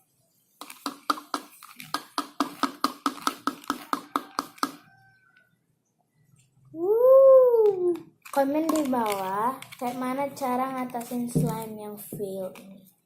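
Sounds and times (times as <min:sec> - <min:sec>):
stirrer tapping plastic container: 0:00.6 - 0:04.9, 0:08.3 - 0:12.7.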